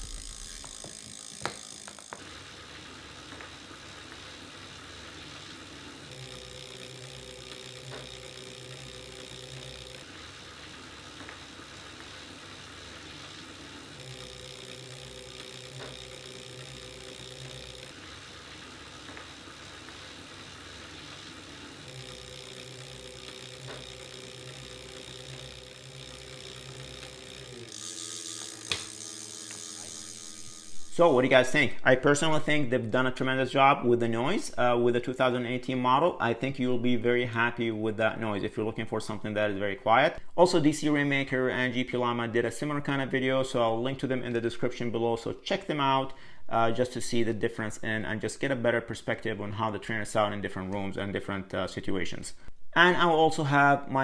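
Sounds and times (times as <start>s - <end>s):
bike trainer flywheel whirring: 0.0s - 31.6s.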